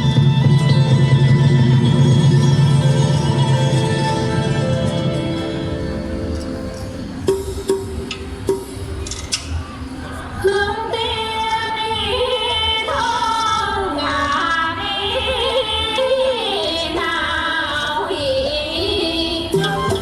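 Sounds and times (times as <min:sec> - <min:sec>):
accompanying music: 0:00.0 - 0:20.0
woman singing: 0:10.4 - 0:20.0.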